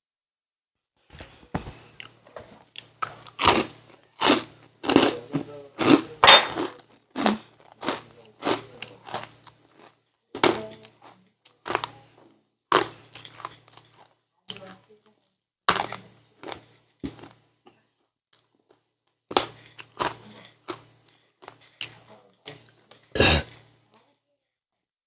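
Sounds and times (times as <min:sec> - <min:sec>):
person chewing crunchy food: 0:01.9 - 0:12.0, 0:12.7 - 0:14.1, 0:15.7 - 0:17.4, 0:19.3 - 0:22.0.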